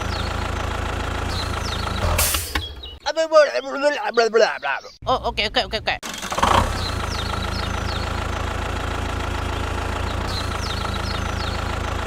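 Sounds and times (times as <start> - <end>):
tractor engine idling: 0.0 - 3.1, 5.7 - 12.0.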